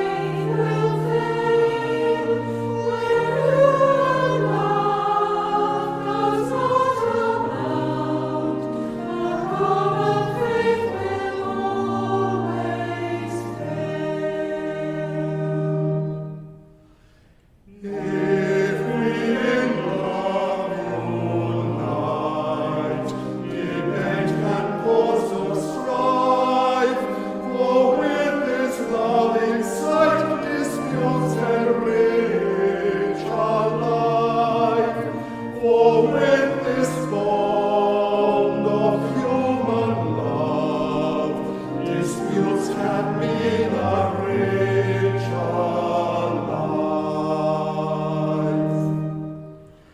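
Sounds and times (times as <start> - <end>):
congregation singing a hymn: 0.0 - 16.8, 17.7 - 49.9.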